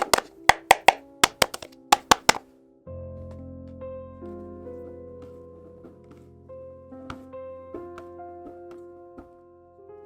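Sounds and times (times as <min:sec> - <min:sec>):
sharp tapping clicks: 0:00.0 - 0:02.4
soft background music: 0:00.0 - 0:10.0.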